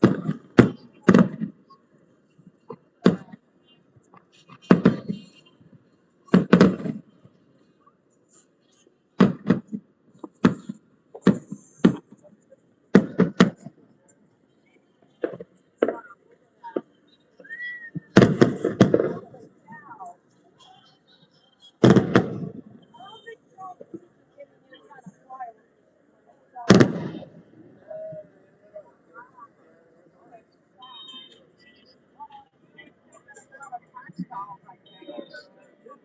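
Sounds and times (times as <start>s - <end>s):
fireworks booming: 0.0s - 1.7s, 4.4s - 5.4s, 6.3s - 7.1s, 9.2s - 12.2s, 12.9s - 13.8s, 15.2s - 16.2s, 18.0s - 19.4s, 21.8s - 22.9s, 26.7s - 27.6s.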